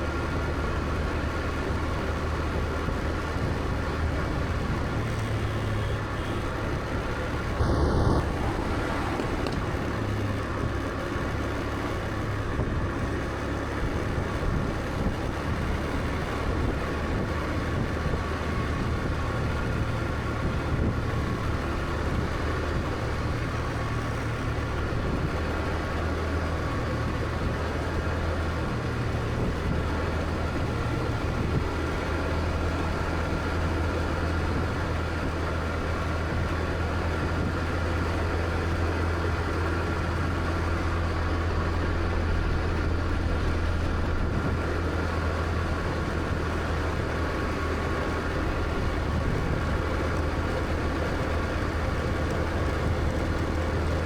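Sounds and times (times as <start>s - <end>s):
scooter engine droning: 0.0s - 24.4s
road noise: 0.0s - 54.0s.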